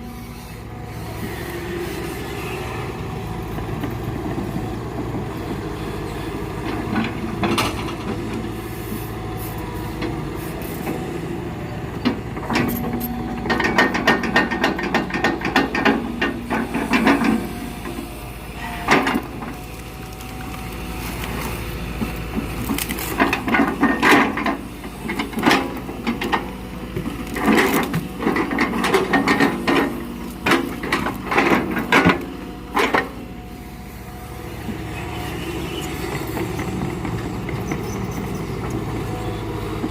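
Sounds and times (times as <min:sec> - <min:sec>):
excavator engine running: 0:00.0 - 0:39.9.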